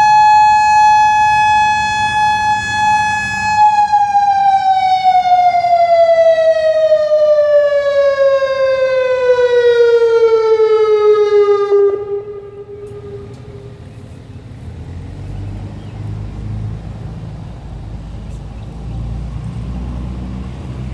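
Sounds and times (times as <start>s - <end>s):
warning siren winding down: 0.0s - 13.9s.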